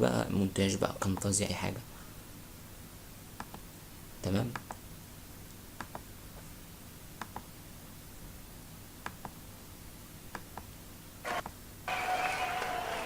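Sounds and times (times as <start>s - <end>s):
faint background hiss: 0.0s - 11.9s
computer mouse clicking: 3.4s - 3.6s, 4.5s - 4.8s, 5.8s - 6.1s, 7.2s - 7.5s, 9.0s - 9.4s, 10.3s - 10.7s.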